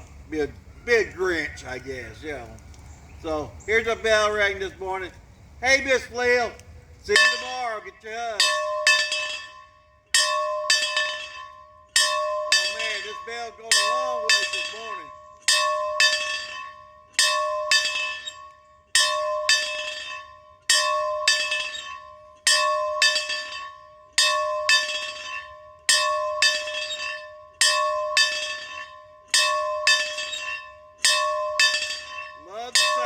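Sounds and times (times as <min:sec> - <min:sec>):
bell ringing: 0:08.4 - 0:33.0.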